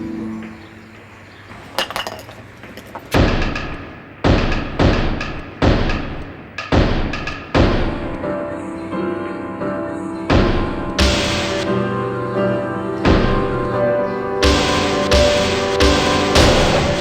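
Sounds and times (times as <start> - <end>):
heavy percussive hits with ringing: 3.2 - 8.2, 10.3 - 11.8, 14.4 - 17.0
noise music: 3.2 - 17.0.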